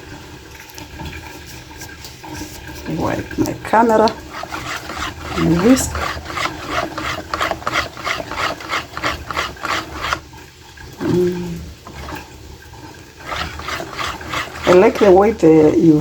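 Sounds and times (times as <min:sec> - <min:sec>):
wire whisk beating batter in bowl: 0:02.2 - 0:10.4, 0:11.8 - 0:12.3, 0:12.9 - 0:16.0.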